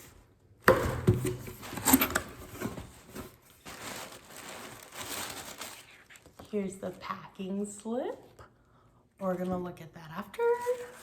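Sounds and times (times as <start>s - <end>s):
cardboard rustling and rubbing: 1.1s - 6.4s.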